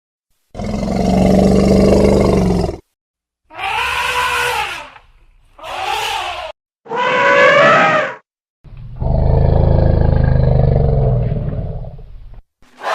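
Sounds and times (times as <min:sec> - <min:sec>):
elephant calling: 0:03.5 - 0:05.0, 0:05.6 - 0:08.2.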